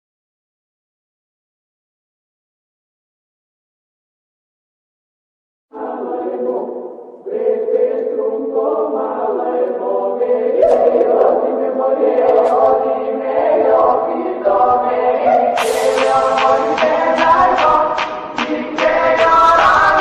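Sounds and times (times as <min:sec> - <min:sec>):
choir-like chant ringtone: 0:05.7 - 0:20.0.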